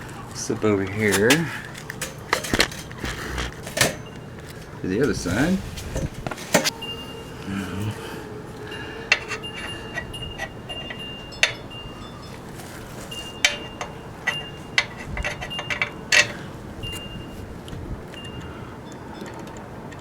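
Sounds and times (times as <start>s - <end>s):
tools clinking on steel frame: 0.8s - 7.1s, 8.6s - 17.4s.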